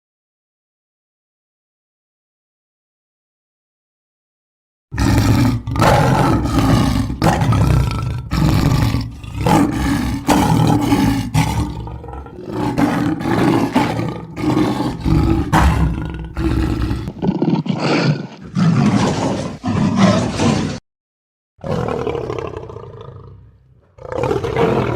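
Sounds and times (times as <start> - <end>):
lion roaring and grunting: 4.9 - 20.8, 21.6 - 24.9.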